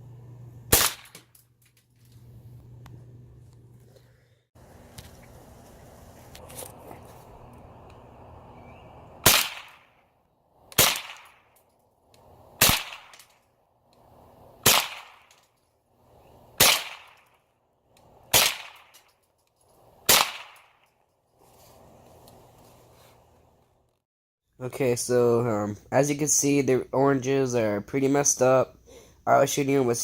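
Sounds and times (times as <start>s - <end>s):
rifle shots: 0.7s - 1.3s, 9.2s - 10.0s, 10.7s - 11.5s, 12.6s - 13.4s, 14.6s - 15.4s, 16.6s - 17.4s, 18.3s - 19.0s, 20.0s - 20.8s.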